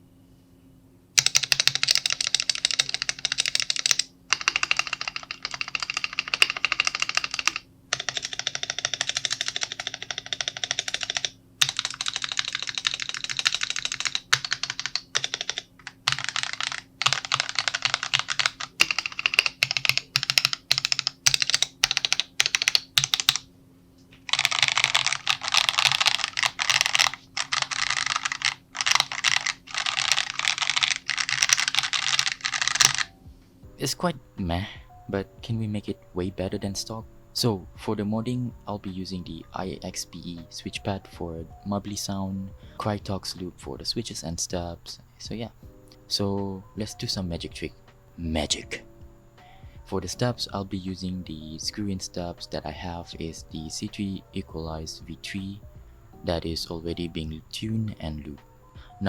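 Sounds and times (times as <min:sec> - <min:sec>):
fast mechanical keyboard typing: 0:01.2 - 0:23.4, 0:24.2 - 0:33.2.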